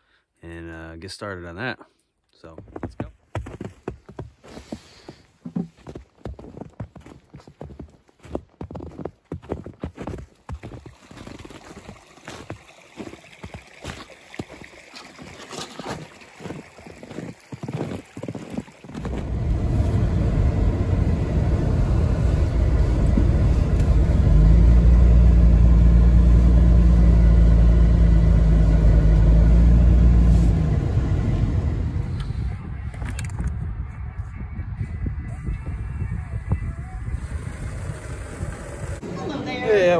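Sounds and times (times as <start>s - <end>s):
vehicle engine droning: 19.1s - 39.8s.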